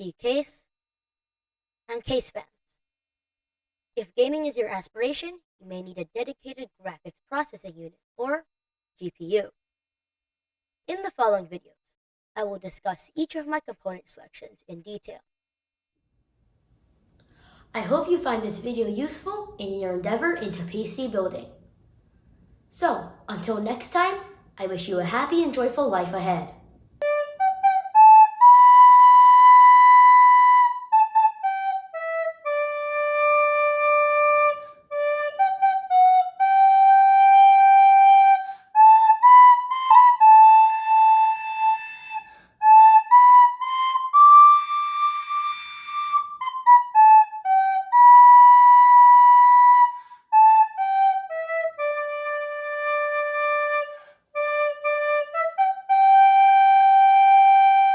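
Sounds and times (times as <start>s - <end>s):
solo woodwind melody: 27.0s - 57.9s.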